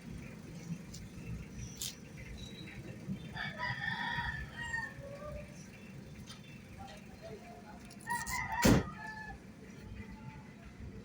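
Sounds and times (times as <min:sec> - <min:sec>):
rooster crowing: 0:03.3 - 0:05.2, 0:08.1 - 0:09.4.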